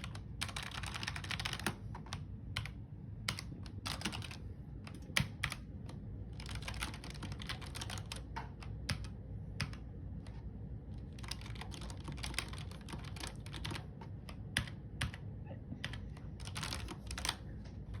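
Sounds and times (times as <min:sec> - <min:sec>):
faint low hum: 0:00.0 - 0:18.0
keyboard typing clicks: 0:11.0 - 0:15.2.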